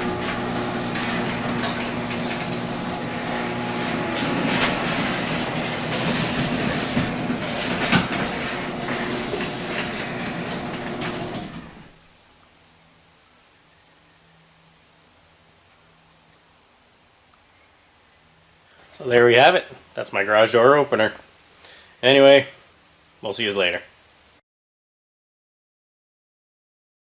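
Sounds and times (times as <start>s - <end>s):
garage door opener motor humming: 0.0s - 12.1s.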